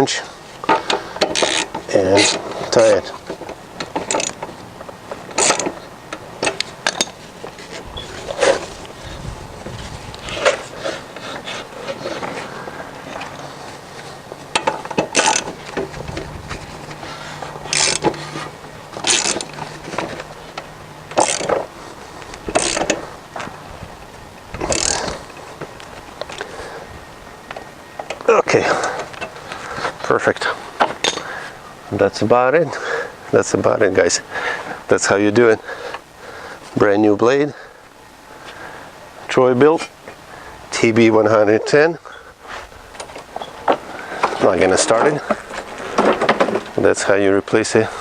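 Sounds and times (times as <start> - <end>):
ratchet wrench clicking: 0.9 - 2.4, 5.3 - 5.8, 14.6 - 15.5, 17.7 - 18.2, 19.0 - 19.6, 21.1 - 21.6, 22.5 - 23.0, 24.6 - 25.2.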